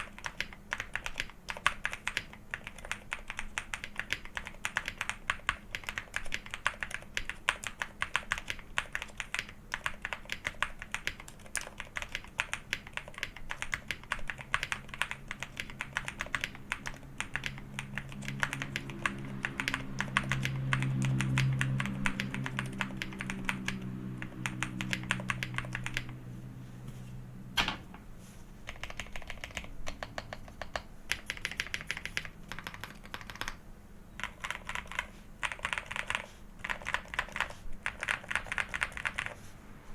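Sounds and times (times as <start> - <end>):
mechanical keyboard typing: 0.0 - 26.2, 28.7 - 33.6, 34.2 - 39.4
low hum: 14.6 - 28.6.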